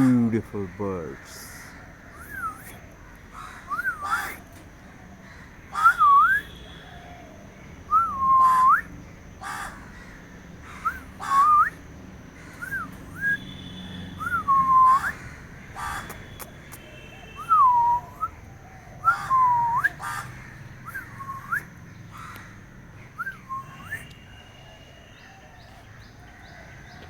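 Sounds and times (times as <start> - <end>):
bird whistled calls: 2.1 - 2.8, 3.7 - 4.4, 5.8 - 7.0, 7.9 - 8.9, 10.7 - 11.8, 12.5 - 15.2, 15.8 - 18.4, 19.0 - 20.2, 20.8 - 21.7, 23.1 - 25.4.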